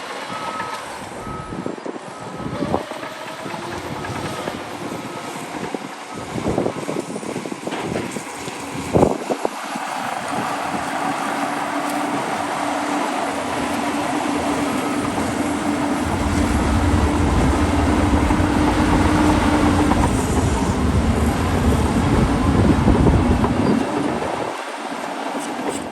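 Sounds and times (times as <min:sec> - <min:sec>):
diesel engine with whine: 0:00.0 - 0:25.9.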